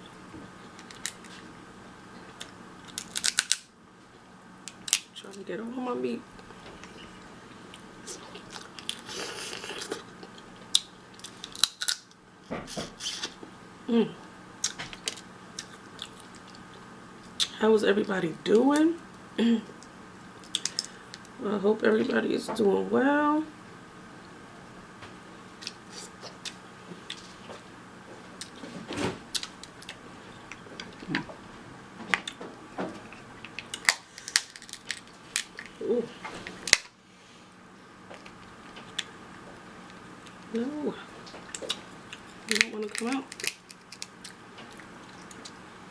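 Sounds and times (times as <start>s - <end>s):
crab shell cracking: 0.8s - 1.3s, 2.4s - 3.7s, 4.6s - 5.2s, 8.3s - 12.2s, 20.4s - 21.3s, 33.1s - 35.8s, 36.6s - 37.0s, 41.5s - 45.6s
person chewing: 6.4s - 12.0s, 14.6s - 17.5s, 20.4s - 21.2s, 33.0s - 35.8s, 41.5s - 45.6s.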